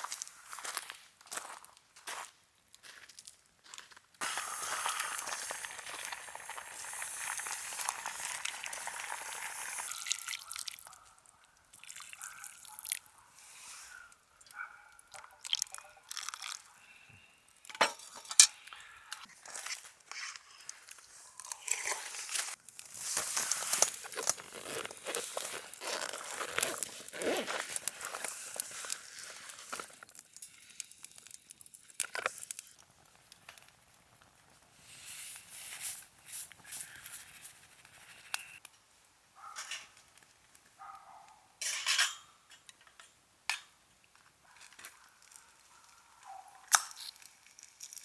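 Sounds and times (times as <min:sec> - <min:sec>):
crinkling and rustling: 0:17.6 - 0:34.7.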